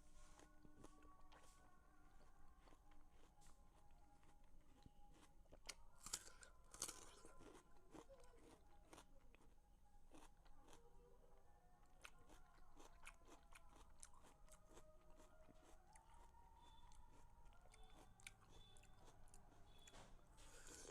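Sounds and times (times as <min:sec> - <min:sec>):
chewing watermelon crunches: 0:00.2 - 0:10.9, 0:11.9 - 0:20.9
crunchy bites: 0:05.1 - 0:09.0.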